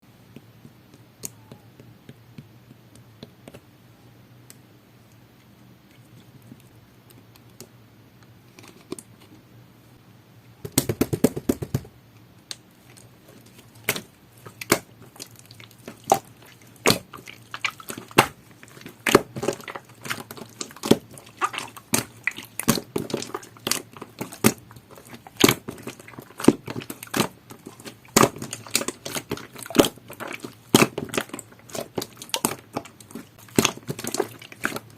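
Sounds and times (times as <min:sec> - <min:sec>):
slime squished by hand: 0:12.8 - 0:34.9
sticky crackles: 0:12.8 - 0:34.9.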